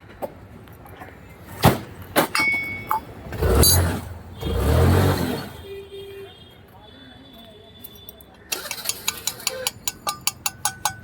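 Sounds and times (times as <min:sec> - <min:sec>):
sharp metal knocks: 0:08.9 - 0:11.0.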